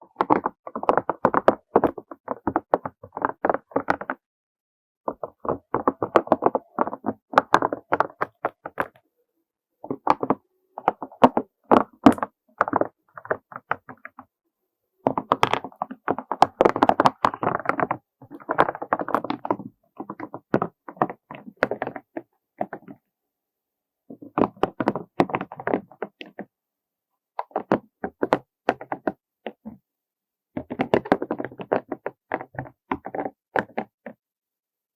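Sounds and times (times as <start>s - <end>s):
tapping and clicking on hard objects: 5.1s - 9.0s, 9.8s - 14.2s, 24.2s - 26.5s, 30.6s - 34.2s.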